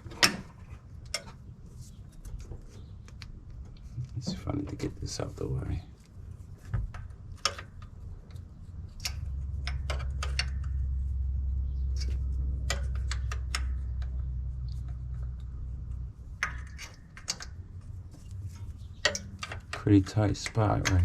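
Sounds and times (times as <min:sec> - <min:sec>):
steady low rumble: 0:00.0 - 0:21.0
metal tools clicking and clinking: 0:18.3 - 0:21.0.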